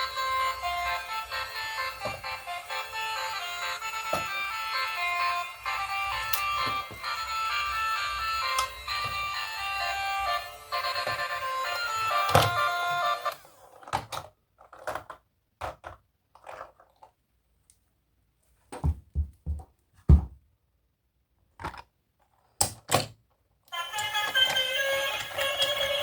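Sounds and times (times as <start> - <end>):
music: 0.0 - 13.4, 23.7 - 26.0
toy vehicles knocking: 0.1 - 17.1, 23.8 - 26.0.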